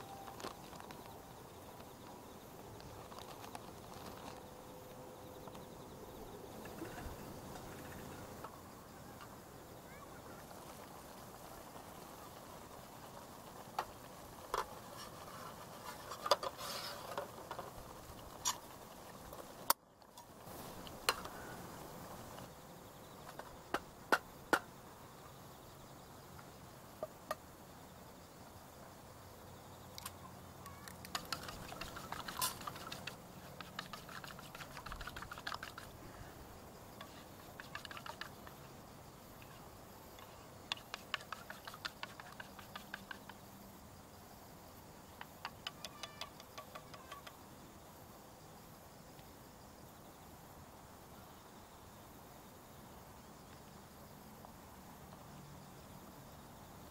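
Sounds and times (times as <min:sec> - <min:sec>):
campfire wood crackling: 0:00.0 - 0:22.6, 0:30.0 - 0:38.8
faint steady hiss: 0:00.0 - 0:56.9.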